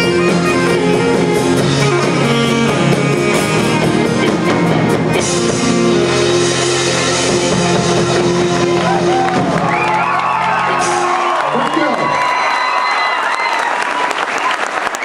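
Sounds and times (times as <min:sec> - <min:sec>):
rock band playing: 0:00.0 - 0:12.8
audience whooping and cheering: 0:07.2 - 0:15.0.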